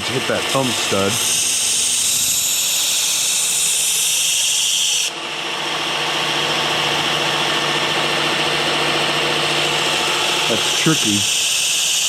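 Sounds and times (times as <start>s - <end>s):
belt sharpener motor humming: 0.0s - 12.0s.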